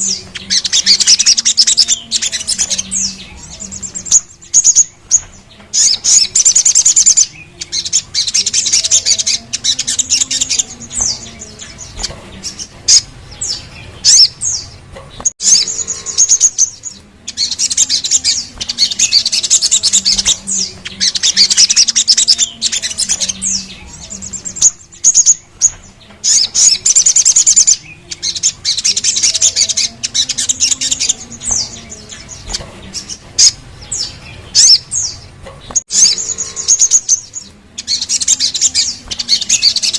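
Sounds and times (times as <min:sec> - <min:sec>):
bird high rapid trilling: 0:35.8 - 0:39.9.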